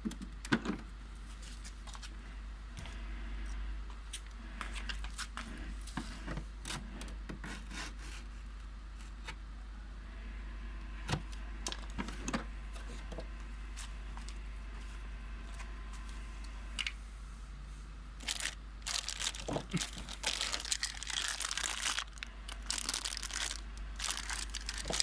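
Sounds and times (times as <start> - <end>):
tool packaging handling noises: 18.2 - 25.0.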